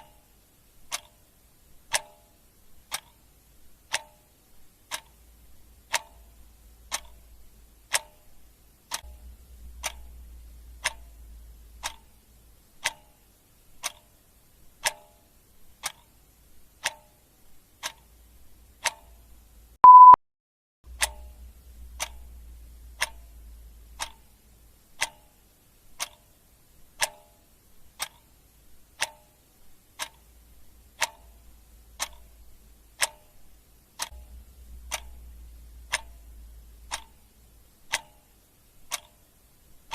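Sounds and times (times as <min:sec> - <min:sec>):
clock ticking: 0:00.0 - 0:20.2, 0:20.9 - 0:39.9
short electronic beep: 0:19.8 - 0:20.2.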